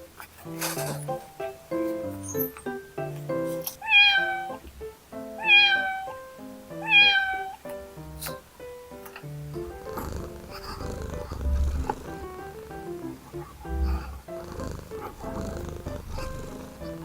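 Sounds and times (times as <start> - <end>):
cat meowing: 3.7 - 4.6, 5.4 - 6.2, 6.8 - 8.4
music with plucked notes: 7.6 - 17.0.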